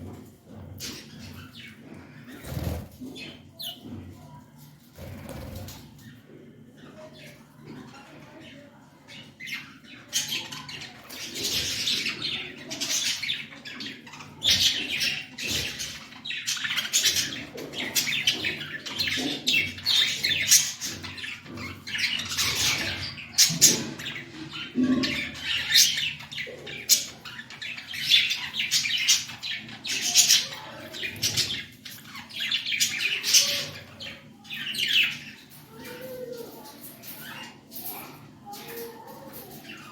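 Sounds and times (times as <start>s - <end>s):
budgerigars chattering and squawking: 6.8s - 39.9s.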